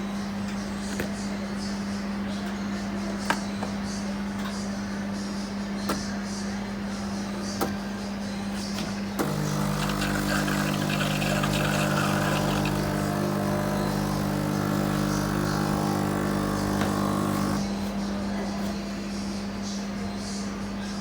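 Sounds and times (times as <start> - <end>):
coffee machine pump humming: 8.6 - 18.8
pump clicking on: 9.2 - 17.6.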